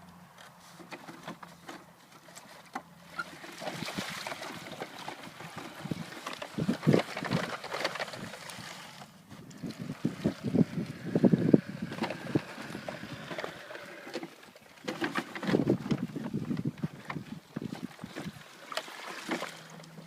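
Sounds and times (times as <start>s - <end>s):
water splashing and churning: 2.2s - 20.0s.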